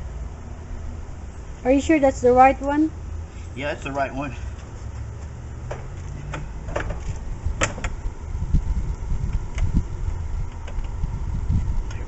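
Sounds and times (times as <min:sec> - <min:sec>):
low rumble: 0:05.8 - 0:12.0.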